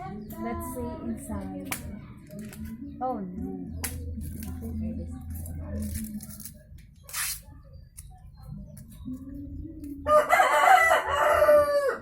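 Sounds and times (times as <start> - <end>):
rooster crowing: 10.1 - 12.0.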